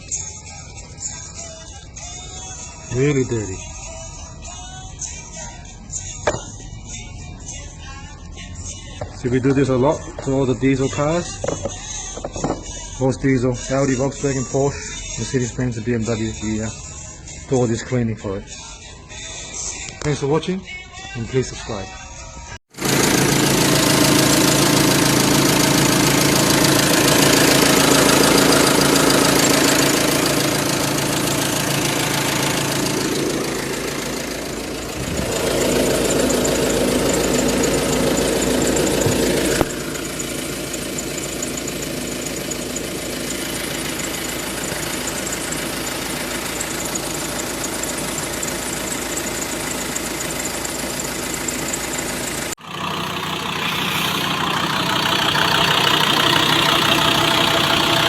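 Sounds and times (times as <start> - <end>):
vehicle engine idling: 22.8 - 58.0.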